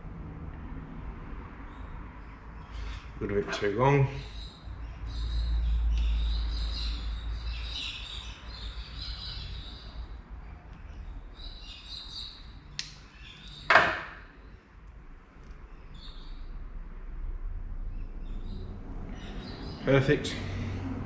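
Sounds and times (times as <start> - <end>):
birds chirping: 1.6 - 14.6, 18.0 - 20.8
sharp snap: 12.7 - 14.1.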